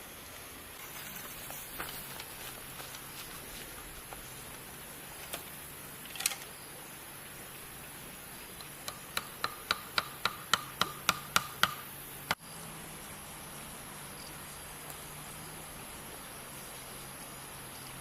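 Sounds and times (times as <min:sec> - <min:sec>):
sharp blows on bamboo: 0:08.6 - 0:12.4.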